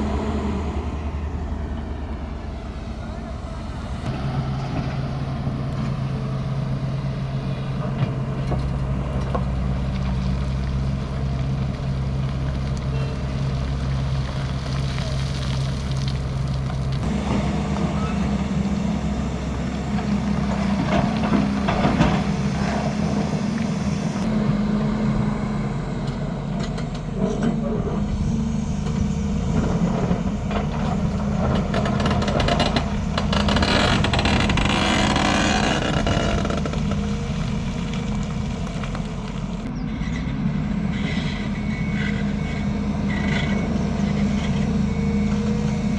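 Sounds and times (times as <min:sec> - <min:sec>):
heavy diesel engine running: 0:00.0 - 0:45.9
machinery knocks and clatters: 0:19.9 - 0:23.2, 0:28.9 - 0:37.2.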